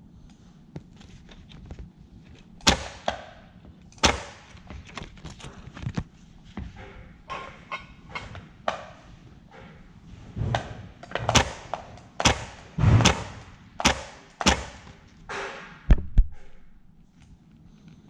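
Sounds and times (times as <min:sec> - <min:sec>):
electric stapler clacking: 0:11.1 - 0:15.6.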